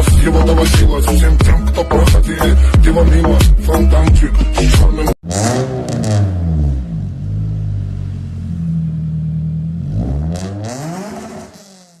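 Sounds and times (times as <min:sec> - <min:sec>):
motorcycle engine revving: 0:05.2 - 0:12.0.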